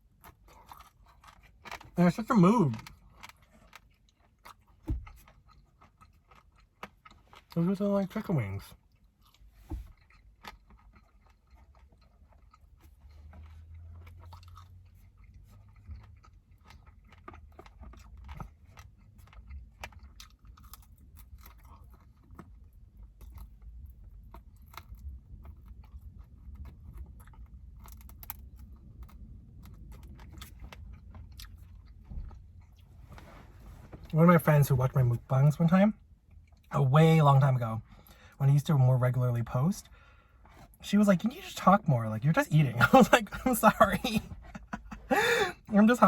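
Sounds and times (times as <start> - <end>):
person chewing chicken wings: 0.0 - 32.9, 43.2 - 45.7
mouth clicks and crunches: 0.0 - 34.2, 42.3 - 46.0.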